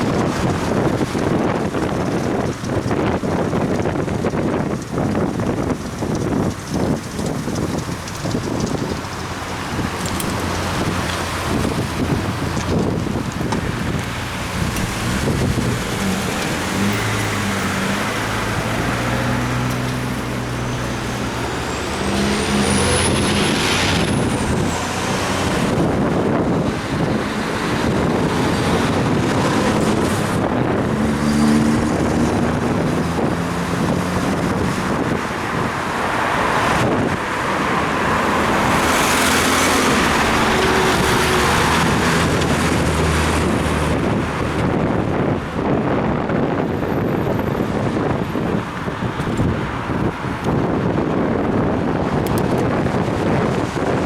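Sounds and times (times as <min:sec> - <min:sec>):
passing car and truck engines: 0:00.0 - 0:54.0.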